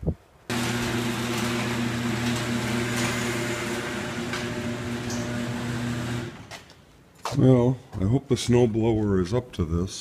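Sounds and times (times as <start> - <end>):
snowblower motor humming: 0.5 - 6.5.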